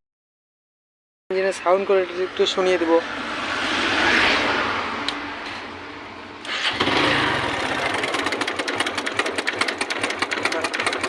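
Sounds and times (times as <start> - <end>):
motorcycle engine revving: 6.4 - 11.0
fast ticking chain rattle: 7.9 - 11.0.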